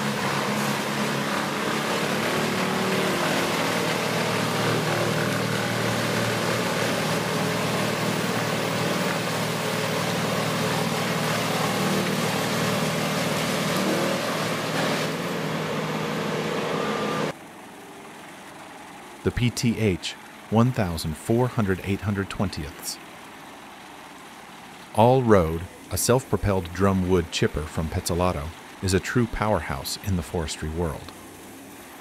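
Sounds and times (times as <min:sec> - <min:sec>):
loud rushing noise: 0:00.0 - 0:17.3
engine drone: 0:00.0 - 0:32.0.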